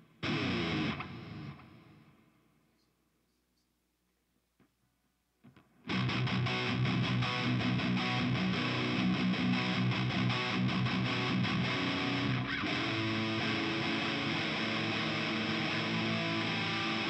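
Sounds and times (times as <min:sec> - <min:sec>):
distorted electric guitar riffing: 0:00.0 - 0:02.2, 0:05.9 - 0:17.0.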